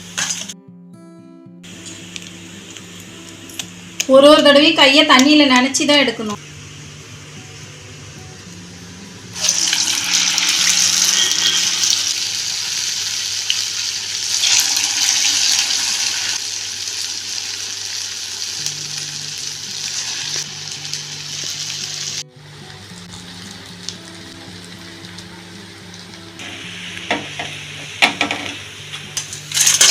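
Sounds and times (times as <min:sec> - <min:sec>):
batter sizzling in hot oil: 0:09.3 - 0:22.2, 0:29.2 - 0:29.9.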